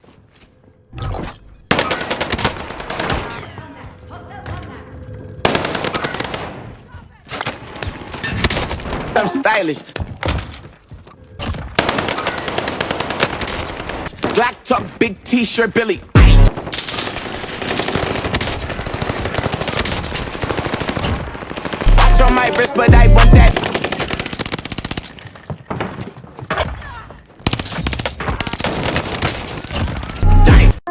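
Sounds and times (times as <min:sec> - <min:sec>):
rapid automatic gunfire: 0:01.7 - 0:03.4, 0:05.4 - 0:06.8, 0:11.8 - 0:14.4, 0:16.5 - 0:22.2, 0:23.3 - 0:25.1, 0:27.4 - 0:30.2.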